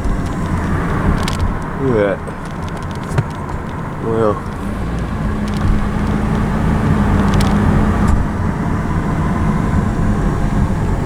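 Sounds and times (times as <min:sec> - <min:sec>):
car engine and road rumble: 0:00.0 - 0:11.0
low cabin hum: 0:00.0 - 0:11.0.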